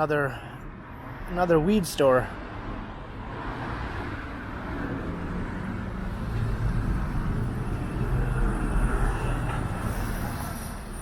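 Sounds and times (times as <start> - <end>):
heavy vehicle passing: 2.8 - 11.0.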